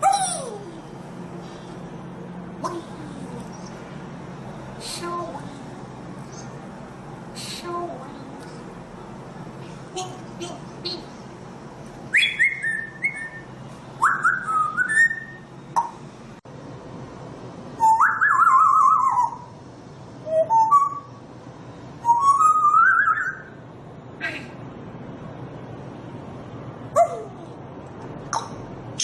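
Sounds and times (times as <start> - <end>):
parrot whistling: 12.1 - 16.0, 17.8 - 19.5, 20.2 - 21.2, 22.0 - 23.6.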